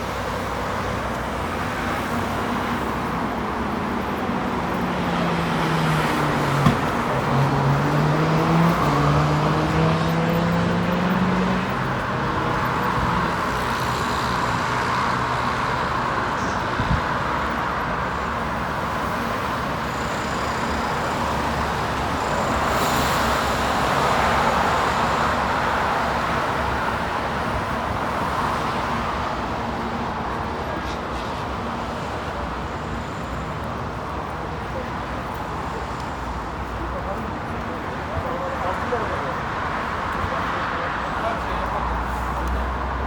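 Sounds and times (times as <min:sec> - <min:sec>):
city road traffic: 0:00.0 - 0:43.0
vehicle engine: 0:01.9 - 0:17.8.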